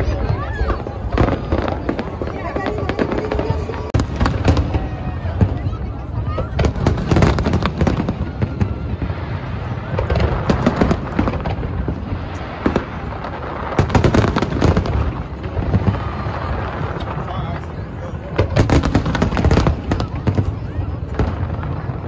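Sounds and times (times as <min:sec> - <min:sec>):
firework shell bursts and crackles: 0:00.0 - 0:22.0.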